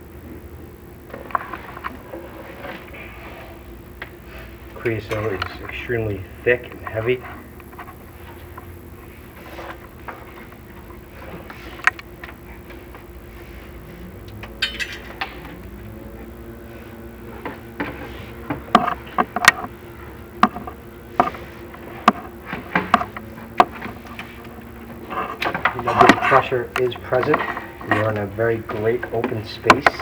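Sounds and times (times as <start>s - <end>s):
electrical hum: 0.0s - 30.0s.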